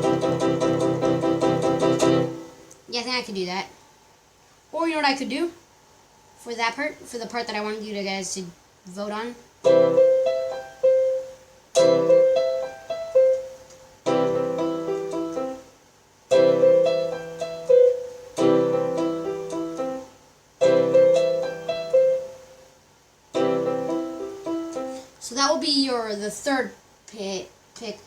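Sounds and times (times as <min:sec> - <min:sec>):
electronic keyboard piano chords: 0:00.0 - 0:02.7, 0:09.6 - 0:22.7, 0:23.3 - 0:25.1.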